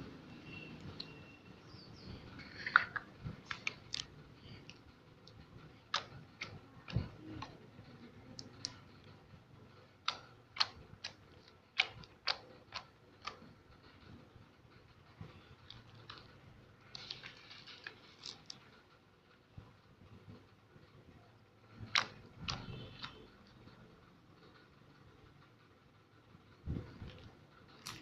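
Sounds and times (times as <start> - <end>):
slime clicking and popping: 5.9 - 7.6, 10.0 - 13.4, 21.9 - 23.2.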